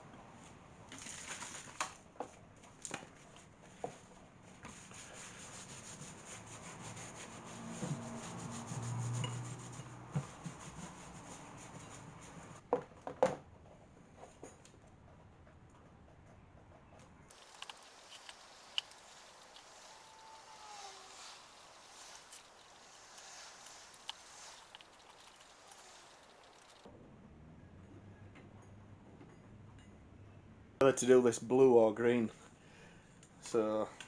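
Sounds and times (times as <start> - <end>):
light rubbing and scraping: 3.2 - 12.6, 17.3 - 26.9
small knocks and clicks: 17.3 - 26.9.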